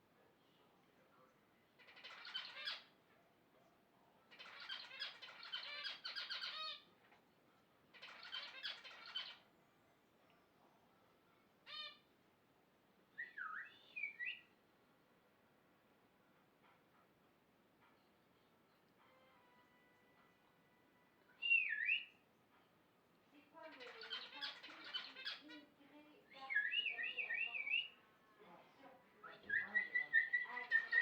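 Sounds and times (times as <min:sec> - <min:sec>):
birds squawking harshly: 0:01.8 - 0:02.9, 0:04.3 - 0:06.9, 0:08.0 - 0:09.4, 0:23.7 - 0:25.7
bird whistled calls: 0:13.2 - 0:14.5, 0:21.4 - 0:22.1, 0:26.6 - 0:27.9, 0:29.5 - 0:31.0.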